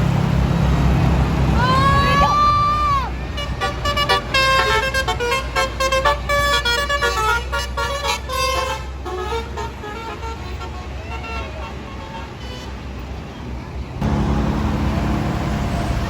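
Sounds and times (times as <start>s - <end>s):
bus engine running: 0.0s - 16.0s
bus musical horn tune: 3.1s - 13.0s.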